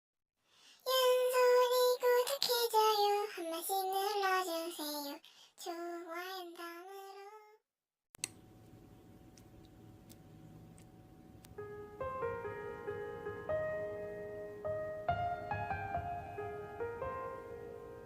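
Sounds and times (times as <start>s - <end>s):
high voice singing unaccompanied: 0.9s - 7.6s.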